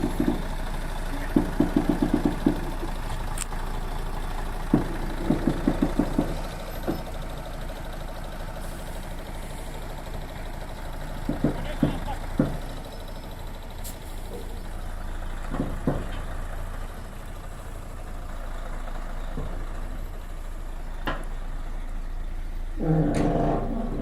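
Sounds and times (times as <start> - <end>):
construction machine engine running: 0.0 - 24.0
short knocks: 1.3 - 3.0, 4.7 - 7.0, 11.2 - 12.8.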